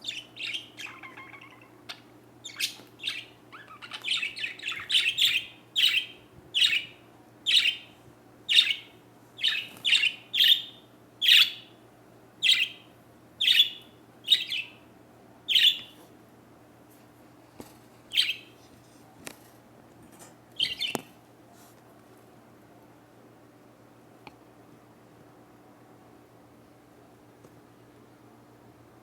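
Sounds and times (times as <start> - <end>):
small bird chirping: 0.0 - 7.9, 8.5 - 11.8, 12.4 - 14.9, 15.5 - 16.0, 18.1 - 18.5, 20.6 - 21.0.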